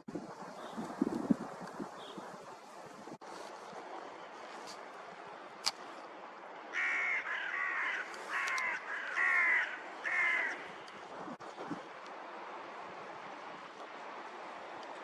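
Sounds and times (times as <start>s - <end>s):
steady wind: 0.0s - 15.0s
crow cawing: 6.7s - 10.7s.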